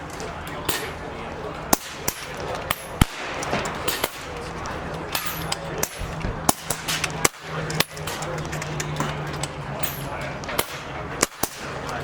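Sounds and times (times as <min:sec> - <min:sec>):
air rifle shots: 0:00.6 - 0:01.0, 0:01.7 - 0:08.5, 0:09.8 - 0:12.0.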